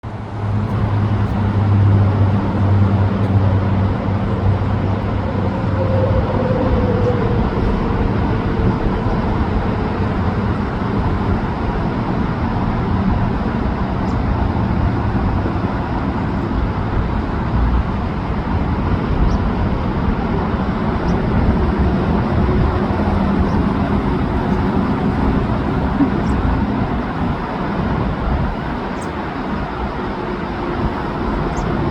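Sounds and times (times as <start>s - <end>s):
hum: 0.0s - 31.9s.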